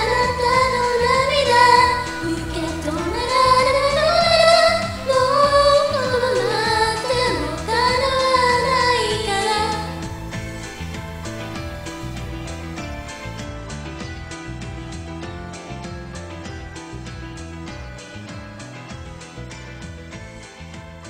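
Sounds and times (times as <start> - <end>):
woman singing pop song: 0.0 - 10.4
instrumental backing track: 0.0 - 21.0.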